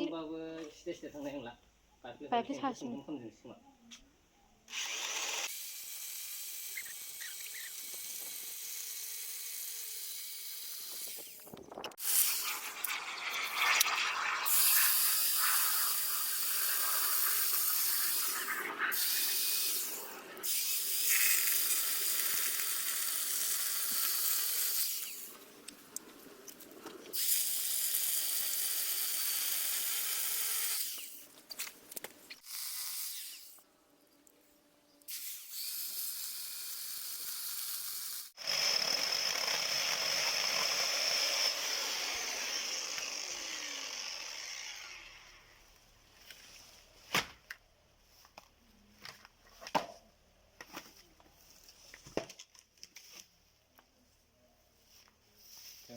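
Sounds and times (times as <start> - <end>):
electric chainsaw running: 4.7 - 12.8, 14.9 - 25.3, 27.2 - 31.2, 35.2 - 45.6.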